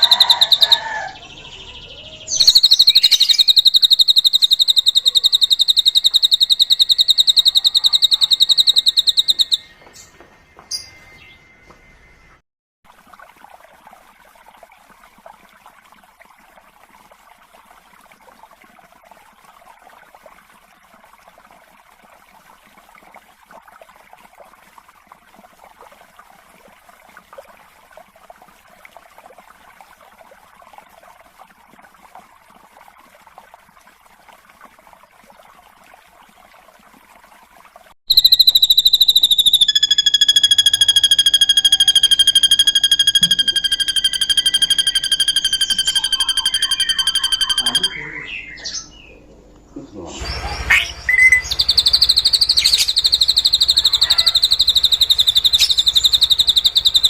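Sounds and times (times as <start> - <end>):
high whistled tone: 2.3 - 9.8, 38.1 - 48.3, 50.4 - 57.0
bird soft chattering: 2.4 - 9.7, 38.1 - 48.8, 50.7 - 57.0.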